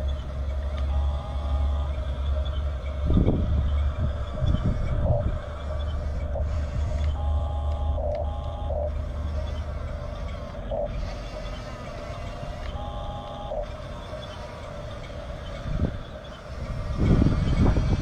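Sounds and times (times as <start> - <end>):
electronic beeping: 0.0 - 18.0
toy bulldozer motor hum: 0.0 - 18.0.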